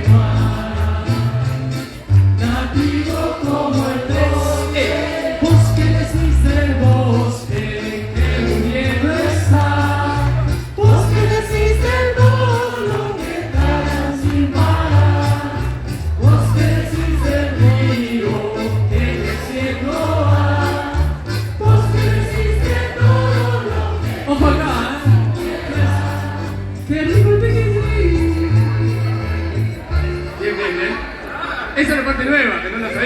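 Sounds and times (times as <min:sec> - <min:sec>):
large choir singing: 0:00.0 - 0:26.9
steady bass line: 0:00.0 - 0:30.7
instrumental accompaniment: 0:00.0 - 0:31.1.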